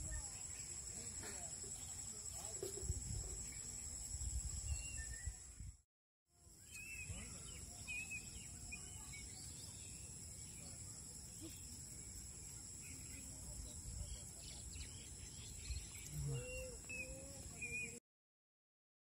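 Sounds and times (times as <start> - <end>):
high insect drone: 0.0 - 5.7, 6.4 - 18.0
bird chirps: 6.6 - 18.0.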